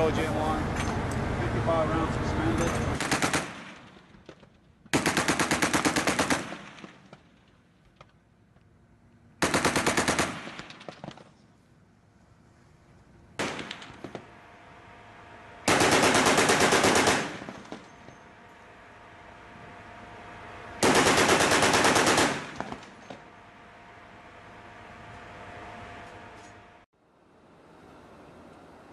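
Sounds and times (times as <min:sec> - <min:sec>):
machine gun firing bursts: 0:03.0 - 0:04.0, 0:04.9 - 0:07.2, 0:09.4 - 0:11.1, 0:13.4 - 0:14.2, 0:15.6 - 0:17.9, 0:20.8 - 0:23.0.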